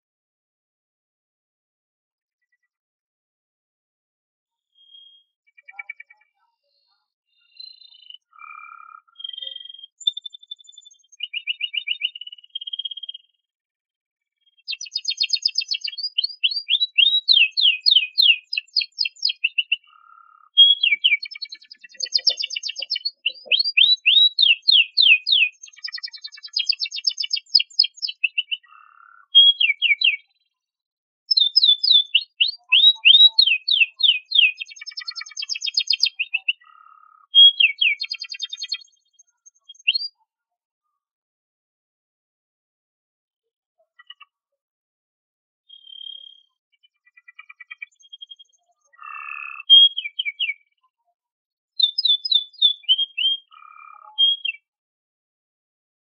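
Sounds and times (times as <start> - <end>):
canary singing: 7.6 - 13.1, 14.6 - 30.3, 31.3 - 38.9, 39.5 - 40.2, 47.2 - 50.7, 51.8 - 54.7.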